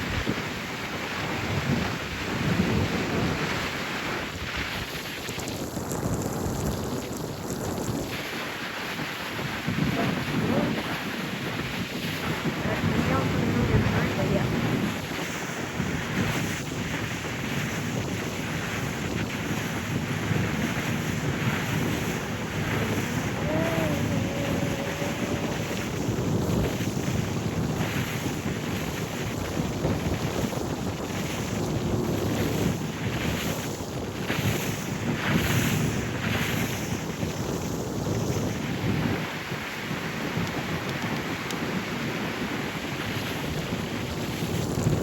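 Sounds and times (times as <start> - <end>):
water rushing past boat: 0.0 - 45.0
wind buffeting microphone: 0.0 - 45.0.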